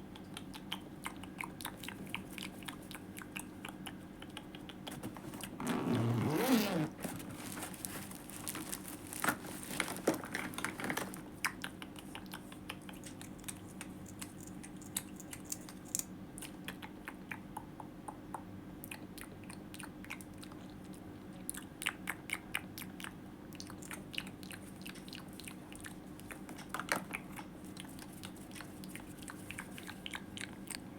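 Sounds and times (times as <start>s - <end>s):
wet mouth clicks and smacks: 0.0s - 4.9s, 11.4s - 30.9s.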